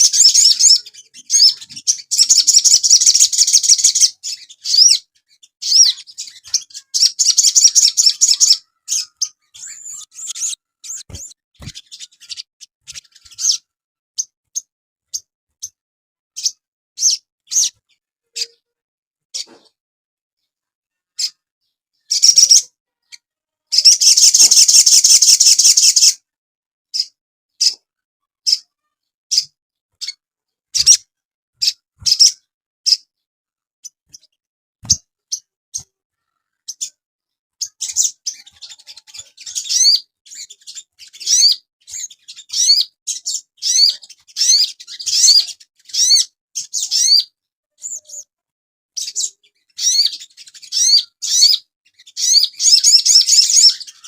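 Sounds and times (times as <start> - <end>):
songbird singing trills and chirps: 0.0 - 13.6, 22.1 - 26.2, 49.0 - 54.0.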